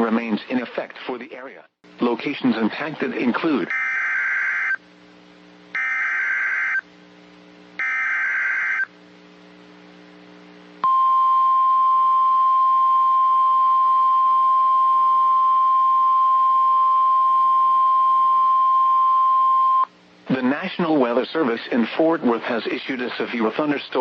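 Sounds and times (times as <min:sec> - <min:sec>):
steady warning alarm tone: 0:03.7 - 0:04.8, 0:05.8 - 0:06.8, 0:07.8 - 0:08.9.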